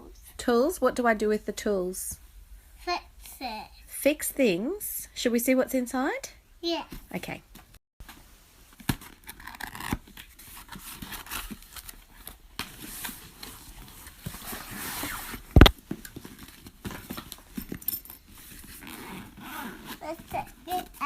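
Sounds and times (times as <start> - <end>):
cardboard and plastic rustling: 8.0 - 21.0.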